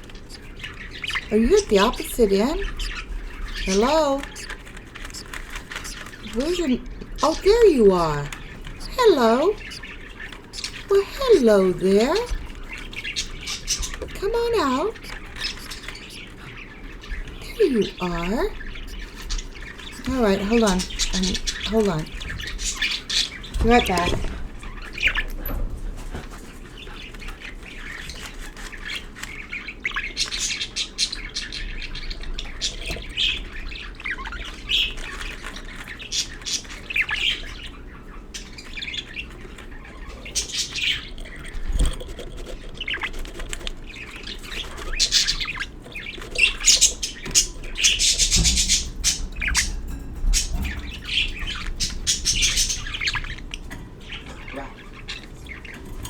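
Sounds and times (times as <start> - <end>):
budgerigars chirping and squawking: 0.0 - 56.0.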